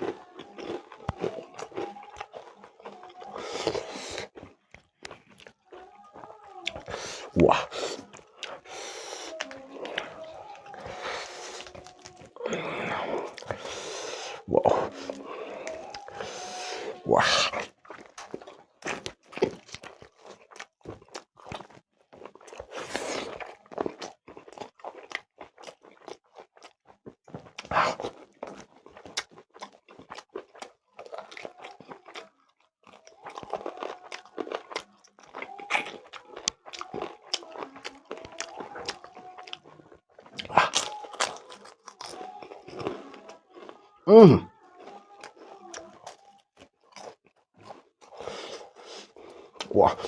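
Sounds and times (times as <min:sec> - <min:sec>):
person biting and chewing: 0:00.0 - 0:43.8.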